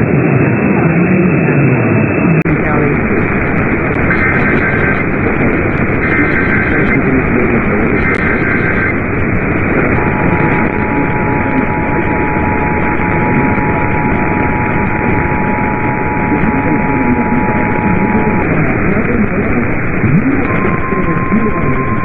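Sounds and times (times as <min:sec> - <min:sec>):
warbling data tones: 0:02.0 - 0:22.0
radio static: 0:02.2 - 0:22.0
two-tone attention signal: 0:09.6 - 0:22.0.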